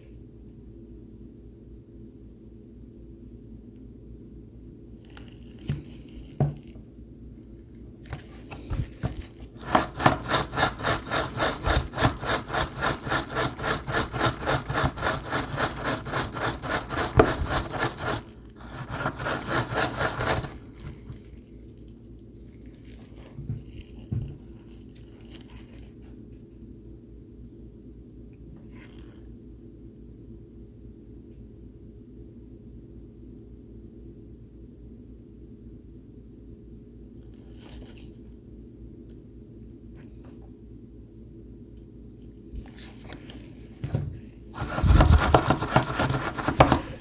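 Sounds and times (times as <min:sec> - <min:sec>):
rapid rubbing strokes: 0:09.6 - 0:20.6, 0:44.6 - 0:47.0.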